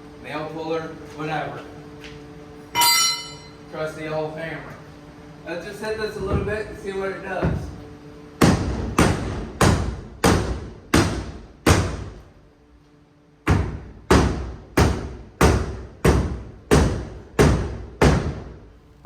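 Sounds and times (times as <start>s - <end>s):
hammer striking wooden boards: 8.4s - 12.2s, 13.4s - 18.6s.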